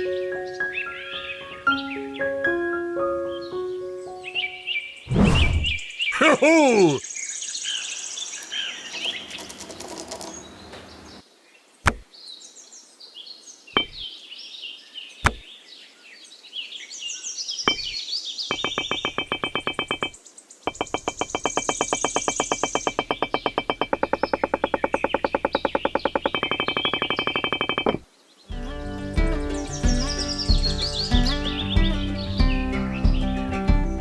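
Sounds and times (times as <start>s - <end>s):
birds chirping: 4.3s - 11.2s, 16.9s - 34.0s
sharp knocks: 15.2s - 15.4s, 18.5s - 20.1s, 20.7s - 32.0s
fast rhythmic background music: 28.5s - 34.0s.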